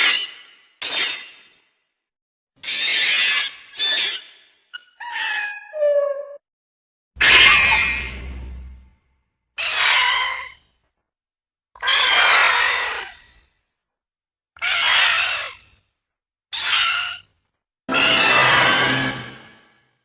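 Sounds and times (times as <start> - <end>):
shrill monster screeches: 7.2 - 8.7, 9.6 - 10.5, 11.8 - 13.1, 17.9 - 19.6.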